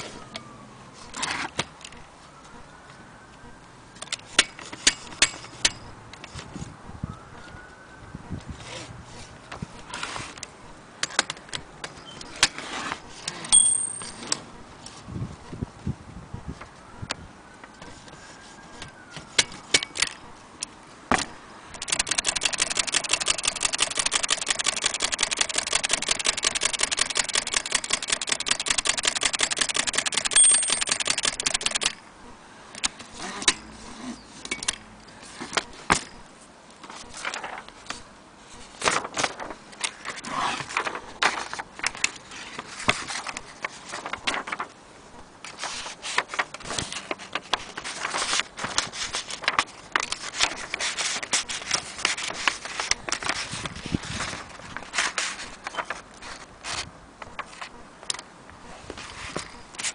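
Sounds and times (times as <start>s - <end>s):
typewriter clicking and clacking: 21.8s - 32.0s.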